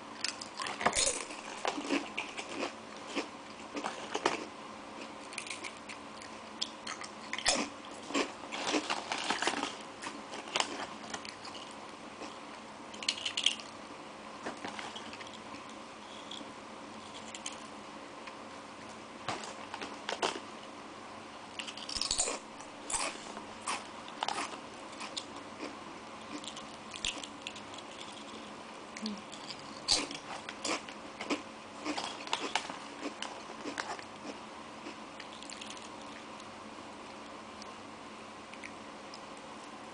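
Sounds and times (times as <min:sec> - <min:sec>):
faint steady hum: 0:00.0 - 0:39.9
crunching crispy snacks: 0:00.2 - 0:12.4, 0:21.6 - 0:36.2.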